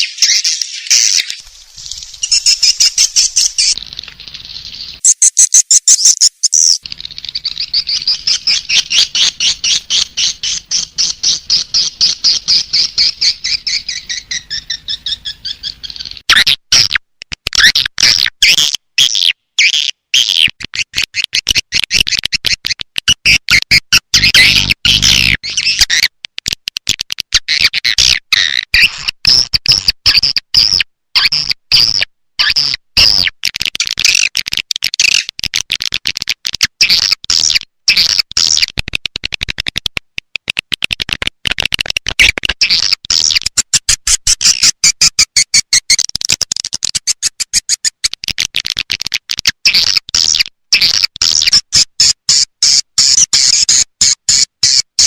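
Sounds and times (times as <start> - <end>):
high-pitched twittering chirps: 0.0 - 16.2, 23.3 - 25.8.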